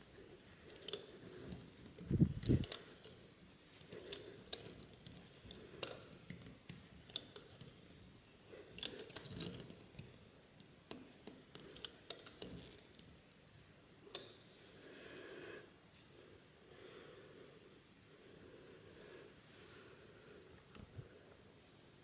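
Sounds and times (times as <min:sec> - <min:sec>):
hand tools clicking and scraping: 0:00.7 - 0:01.7.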